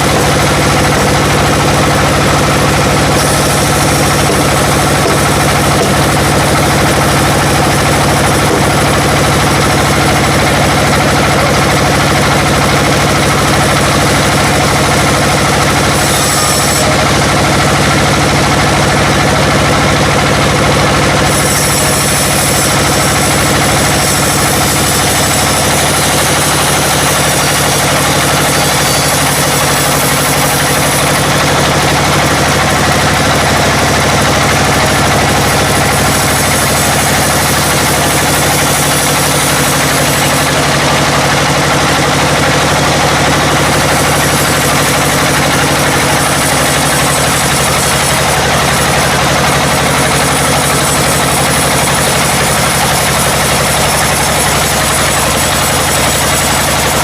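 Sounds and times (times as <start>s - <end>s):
sawmill engine humming: 0.0s - 57.0s.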